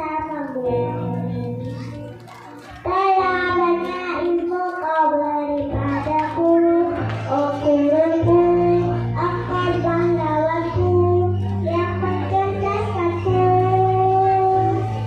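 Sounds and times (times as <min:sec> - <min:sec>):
instrumental accompaniment: 0:00.0 - 0:15.0
children's choir singing: 0:05.9 - 0:15.0.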